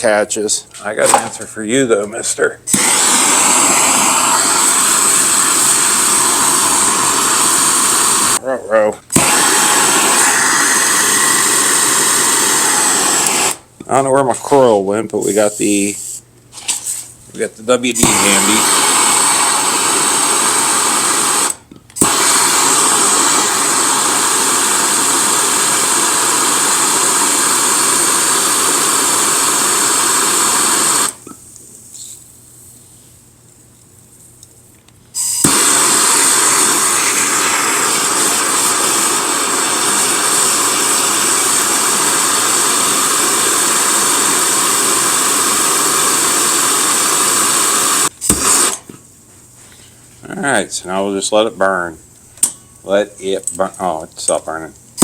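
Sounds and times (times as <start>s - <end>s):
torch igniter click: 2.7s - 7.6s, 9.1s - 13.6s, 18.0s - 27.6s, 35.2s - 44.8s, 48.0s - 48.9s
gas torch flame hissing: 2.7s - 8.4s, 9.1s - 13.8s, 15.1s - 16.2s, 16.9s - 33.6s, 35.1s - 48.9s.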